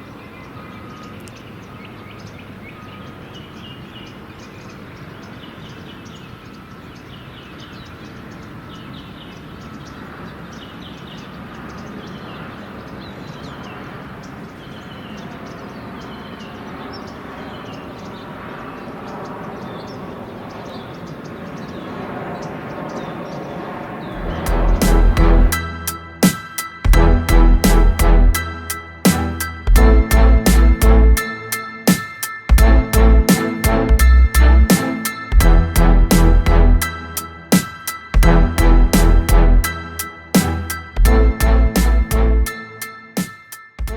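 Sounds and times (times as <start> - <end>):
small birds chirping: 0.0 - 27.0
distant traffic rumble: 8.1 - 43.2.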